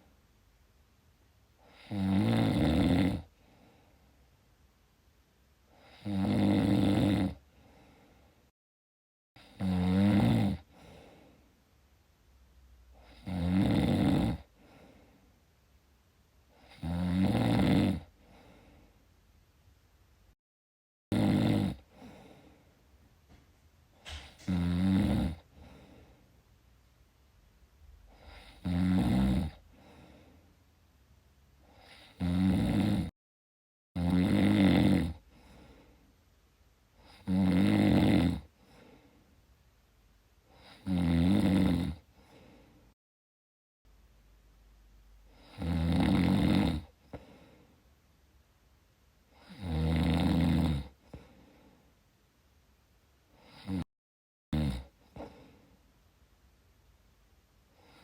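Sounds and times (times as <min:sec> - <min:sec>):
person snoring: 0:01.6 - 0:03.3, 0:05.8 - 0:07.4, 0:09.4 - 0:11.1, 0:13.0 - 0:14.5, 0:16.6 - 0:18.1, 0:21.1 - 0:22.5, 0:24.1 - 0:26.2, 0:28.1 - 0:30.2, 0:31.7 - 0:33.1, 0:34.0 - 0:35.8, 0:37.0 - 0:38.5, 0:40.6 - 0:42.4, 0:45.3 - 0:47.5, 0:49.4 - 0:51.3, 0:53.4 - 0:53.9, 0:54.5 - 0:55.6
faint breathing: 0:03.3 - 0:04.3, 0:07.4 - 0:08.5, 0:10.6 - 0:11.6, 0:14.5 - 0:15.4, 0:18.1 - 0:19.1, 0:21.8 - 0:22.9, 0:25.4 - 0:26.4, 0:29.6 - 0:30.6, 0:35.2 - 0:36.2, 0:38.5 - 0:39.4, 0:42.1 - 0:43.0, 0:46.9 - 0:47.9, 0:51.0 - 0:52.0, 0:55.0 - 0:55.9, 0:57.7 - 0:58.0.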